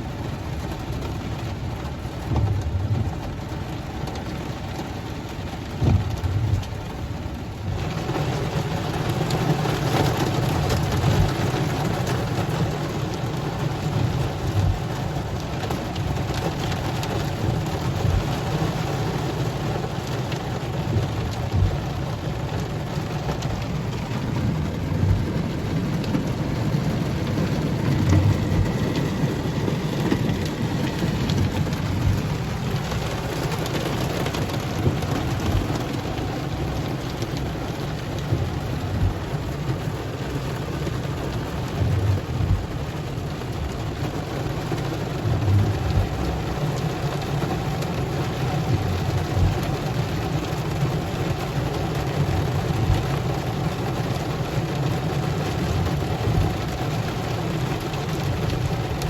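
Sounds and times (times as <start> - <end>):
rain drops striking a surface: 0.0 - 59.0
low rumble: 23.2 - 36.3.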